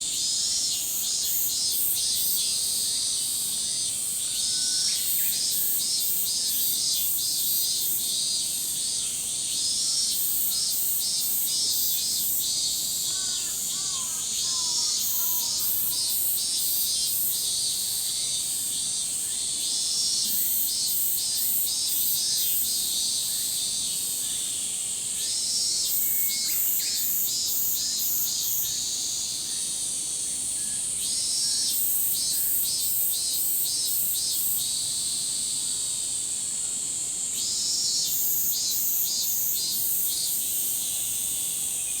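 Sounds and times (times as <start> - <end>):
cicadas droning and pulsing: 0.0 - 42.0.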